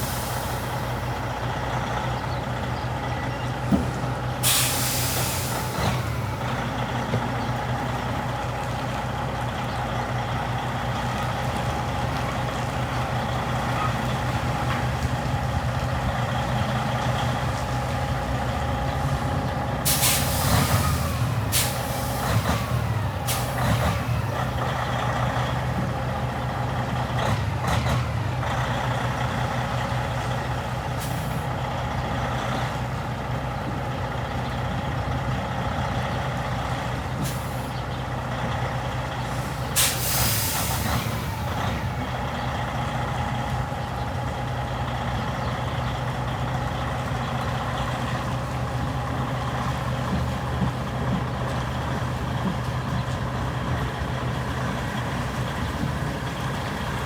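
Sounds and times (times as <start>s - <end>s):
air brake hissing: 0.0s - 1.1s, 4.4s - 6.1s, 19.8s - 23.9s, 39.3s - 41.8s
diesel truck engine running: 0.0s - 57.0s.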